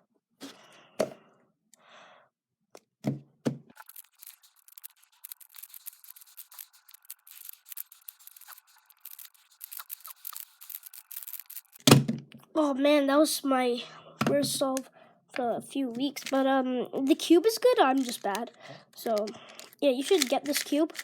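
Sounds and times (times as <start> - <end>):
speed cube plastic clicks: 3.9 - 11.9, 16.0 - 16.4, 17.8 - 21.0.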